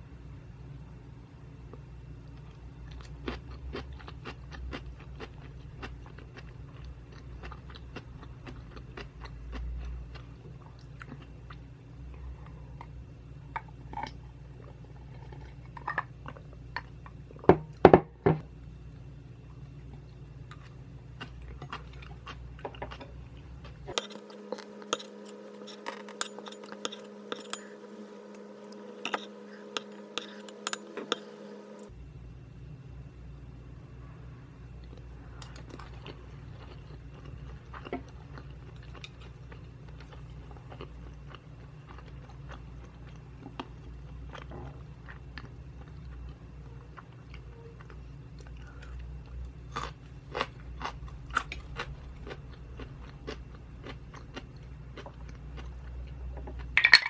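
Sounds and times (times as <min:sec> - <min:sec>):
chewing sticky food: 0:02.3 - 0:11.7, 0:20.4 - 0:27.6, 0:34.8 - 0:56.7
spoon clinking against bowl: 0:23.9 - 0:31.9.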